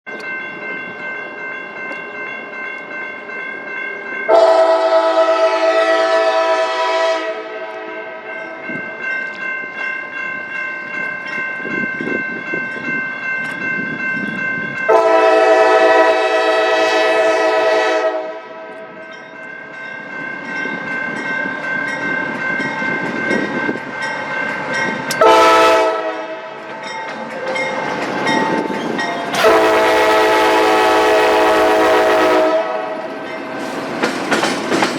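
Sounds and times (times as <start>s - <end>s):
faint steady horn tone: 4.3s - 8.2s, 14.9s - 18.8s, 29.4s - 33.0s
locomotive air horn blasts: 4.3s - 8.6s, 14.9s - 18.8s, 25.2s - 26.6s, 29.3s - 33.1s
train rumble: 4.3s - 34.9s.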